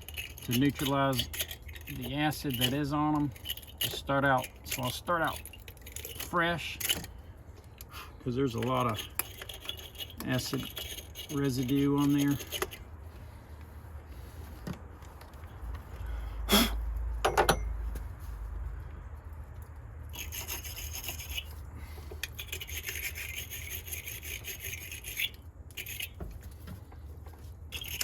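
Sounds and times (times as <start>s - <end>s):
wire brush scrubbing metal: 0.0s - 7.1s, 8.5s - 12.9s, 20.1s - 26.6s, 27.7s - 28.0s.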